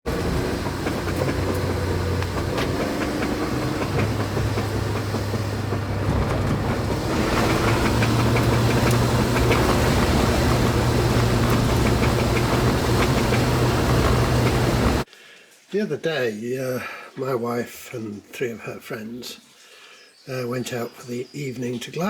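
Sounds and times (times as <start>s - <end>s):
engine and road hum: 0.0s - 15.1s.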